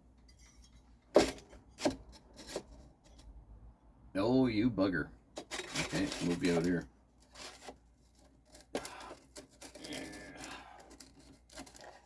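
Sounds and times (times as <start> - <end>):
wood scraping and rubbing: 5.4 - 7.8.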